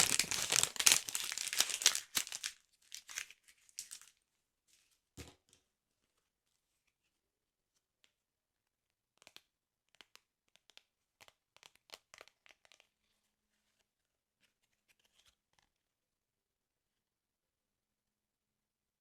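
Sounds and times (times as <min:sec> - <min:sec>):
paper tearing and crinkling: 0:00.0 - 0:04.1.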